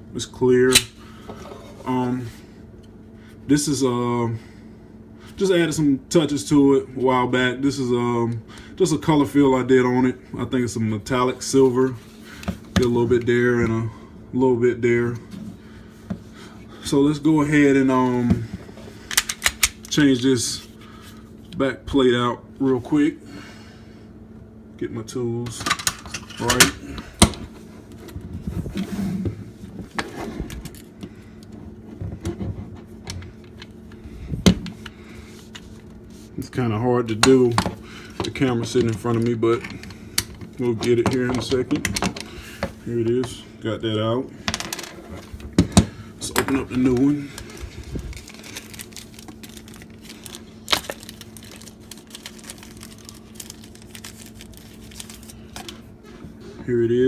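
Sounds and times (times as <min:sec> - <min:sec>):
packaging crinkling and tearing: 0:46.5 - 0:55.9.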